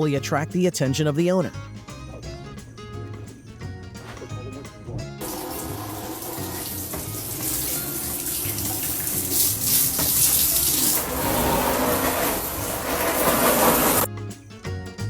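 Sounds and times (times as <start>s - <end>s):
running water rushing: 5.2s - 14.1s.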